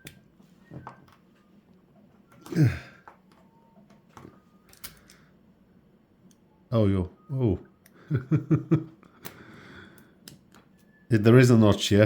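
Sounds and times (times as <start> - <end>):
person sighing: 2.4 - 3.1.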